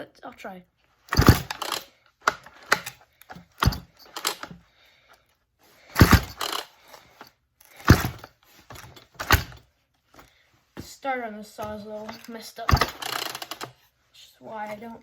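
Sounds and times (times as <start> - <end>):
engine turning over: 1.1 - 4.6, 5.9 - 6.8, 7.7 - 9.6, 12.1 - 13.7
recoil starter cord pulled: 1.1 - 4.6, 5.9 - 9.6, 12.1 - 13.8.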